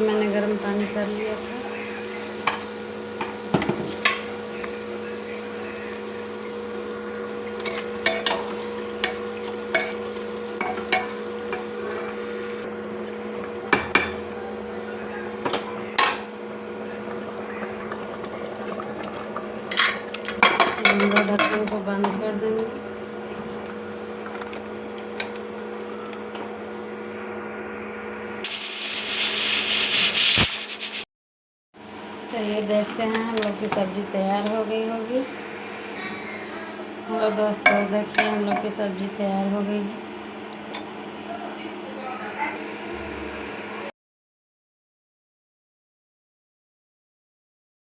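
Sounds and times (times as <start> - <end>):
steady hum: 18.9 - 30.8, 31.9 - 37.4
loud hiss of steam escaping: 28.4 - 31.0.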